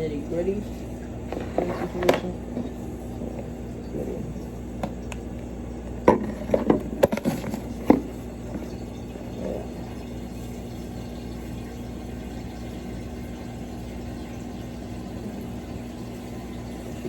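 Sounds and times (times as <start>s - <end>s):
steady low hum: 0.0s - 17.0s
cookware and utensils clattering: 6.0s - 8.8s.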